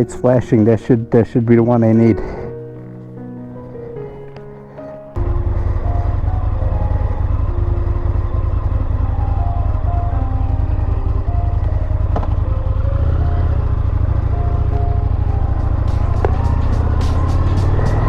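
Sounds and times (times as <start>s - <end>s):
background music: 0.0s - 18.0s
motorcycle engine rumbling: 5.1s - 18.0s.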